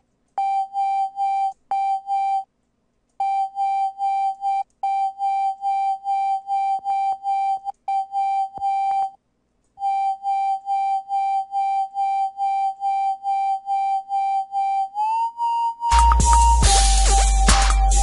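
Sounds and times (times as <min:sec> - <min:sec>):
pulsing high synthesizer note: 0:09.8 - 0:18.0.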